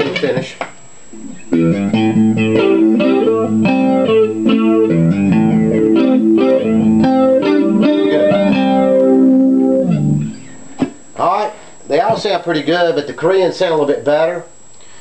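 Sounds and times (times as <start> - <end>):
electric guitar riff: 1.2 - 10.8.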